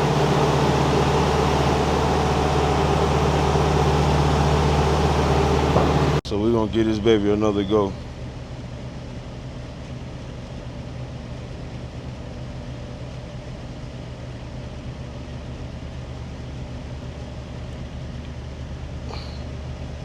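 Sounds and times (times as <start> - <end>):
truck engines idling: 0.0 - 20.0.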